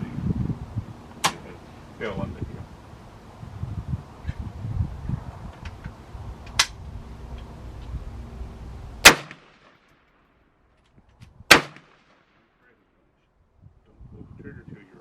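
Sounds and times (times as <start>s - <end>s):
wind rumble: 0.0s - 9.8s, 13.4s - 15.0s
rifle shots: 9.0s - 9.9s, 11.5s - 12.4s.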